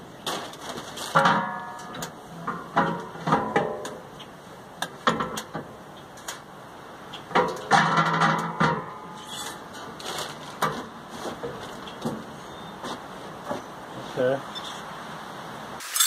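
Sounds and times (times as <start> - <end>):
metal parts clanking and ringing: 15.8 - 16.0.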